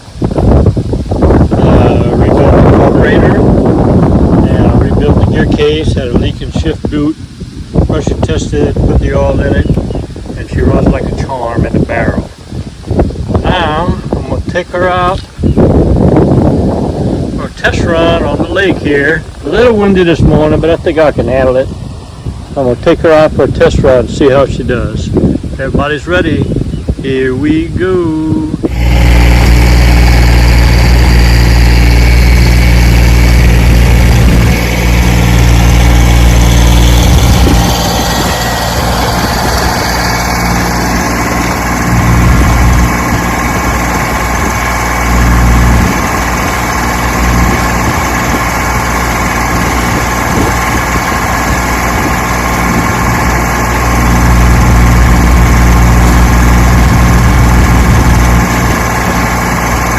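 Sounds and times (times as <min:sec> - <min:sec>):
engine running: 0:00.0 - 0:59.9.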